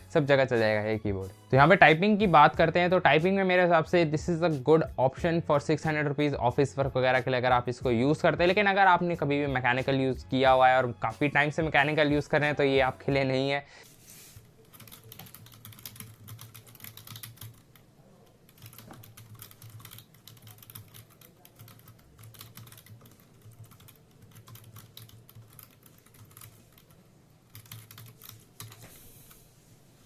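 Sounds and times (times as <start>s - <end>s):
keyboard typing clicks: 14.6s - 17.8s, 18.5s - 28.9s.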